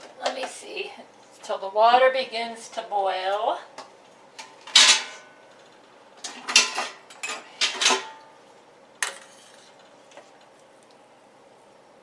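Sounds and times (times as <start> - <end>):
utensils and pot clattering: 4.7 - 5.4, 6.2 - 8.3.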